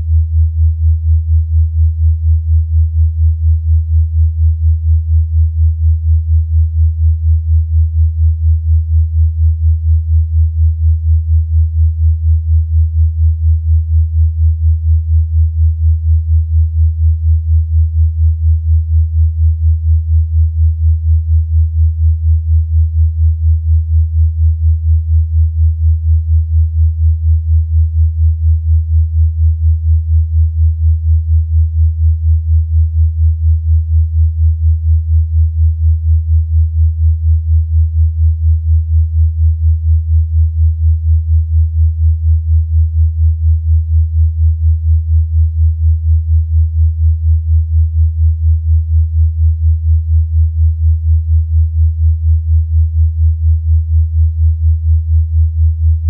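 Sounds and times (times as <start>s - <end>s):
pulsing low sine tone: 0.0s - 56.0s.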